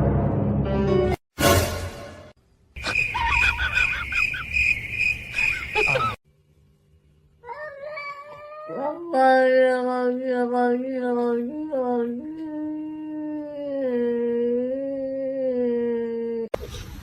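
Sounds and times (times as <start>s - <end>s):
cat yowling: 7.4s - 9.2s.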